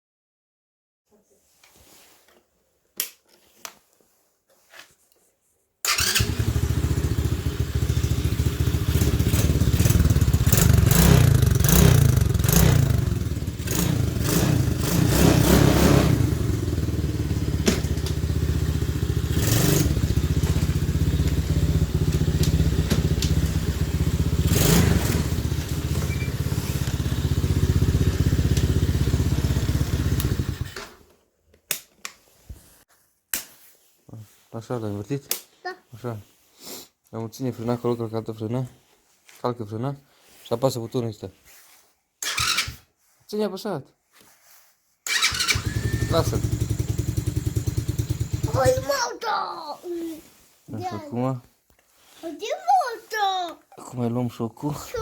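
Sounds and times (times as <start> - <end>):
small engine revving: 5.9 - 31.0, 42.2 - 42.8, 45.1 - 48.9.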